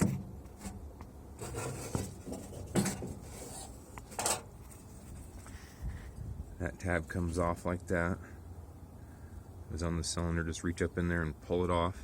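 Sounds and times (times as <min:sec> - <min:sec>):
hands scraping on metal: 0:01.4 - 0:05.8.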